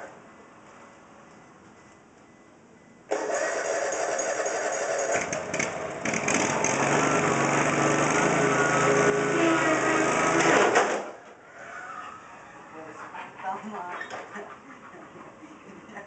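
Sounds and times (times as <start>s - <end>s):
lawn mower engine running: 3.1s - 10.8s.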